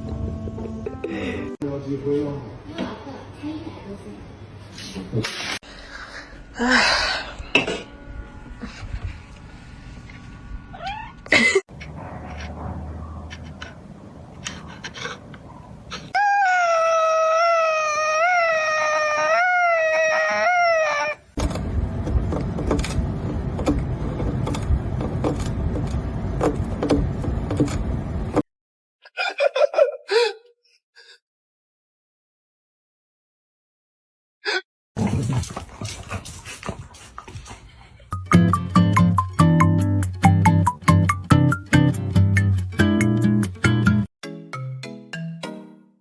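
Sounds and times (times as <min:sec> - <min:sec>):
cat meowing: 0:10.7 - 0:11.2
cat yowling: 0:10.7 - 0:11.2, 0:16.1 - 0:21.3.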